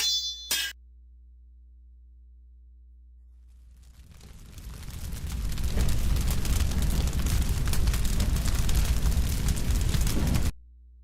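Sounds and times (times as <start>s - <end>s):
deep rumble with dense crackling: 3.1s - 11.0s.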